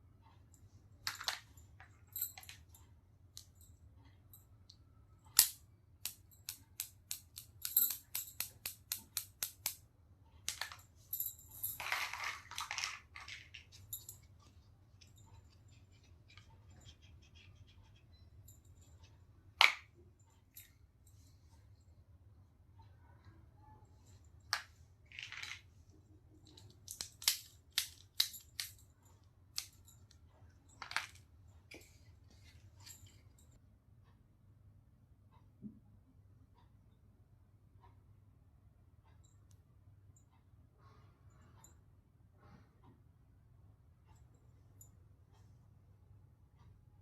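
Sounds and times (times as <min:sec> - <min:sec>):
plastic toy pieces clicking: 0:26.5 - 0:28.8.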